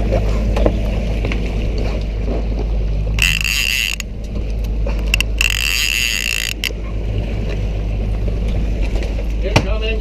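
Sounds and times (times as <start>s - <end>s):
low rumble of boat: 0.0s - 10.0s
fishing reel buzzing: 3.2s - 4.2s, 5.0s - 6.7s.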